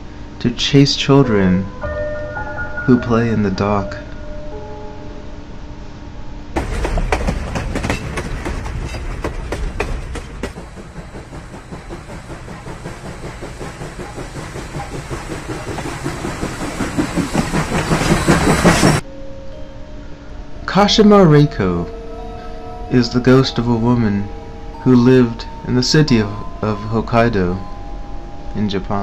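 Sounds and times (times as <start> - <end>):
train wheels clickety-clack: 6.6 - 19.0.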